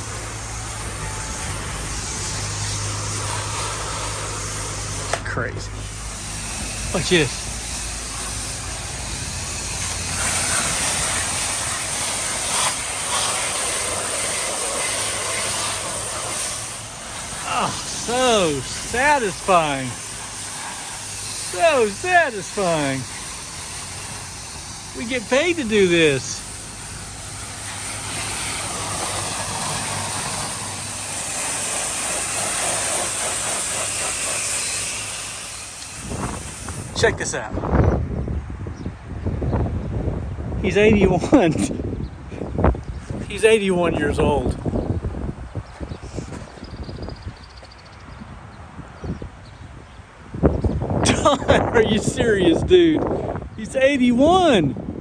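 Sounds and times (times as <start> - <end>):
pressure washer water jet hissing: 0.0 - 37.2.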